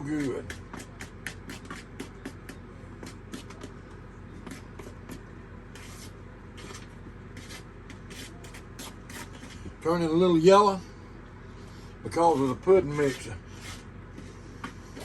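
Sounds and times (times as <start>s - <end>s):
utensil scraping bowl: 5.7s - 9.6s, 12.2s - 13.9s.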